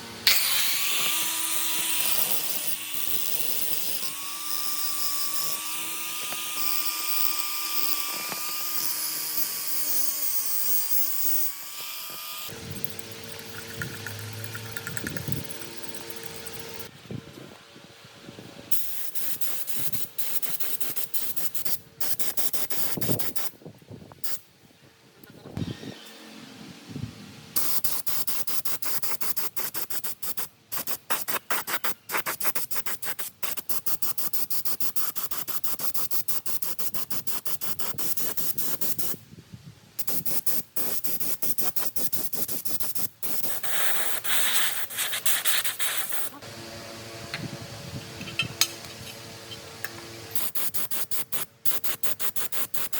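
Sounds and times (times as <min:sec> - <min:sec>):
compressed air hissing spray: 0:18.7 - 0:23.6, 0:40.0 - 0:46.4, 0:50.3 - 0:52.9.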